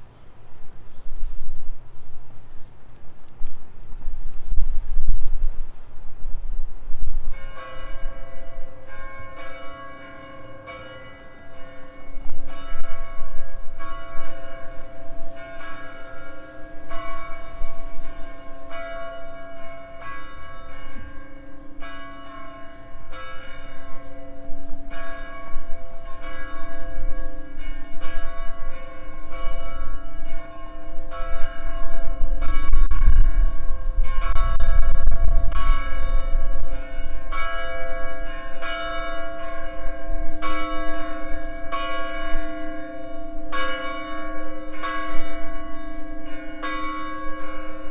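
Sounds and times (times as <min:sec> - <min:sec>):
church bells ringing: 0:07.3 - 0:47.9
low rumble: 0:31.8 - 0:38.2.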